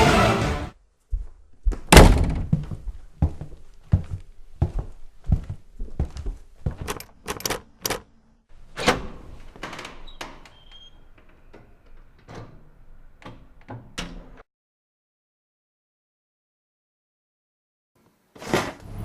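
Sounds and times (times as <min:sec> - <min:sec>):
knocks and thuds: 0:01.7 - 0:02.9.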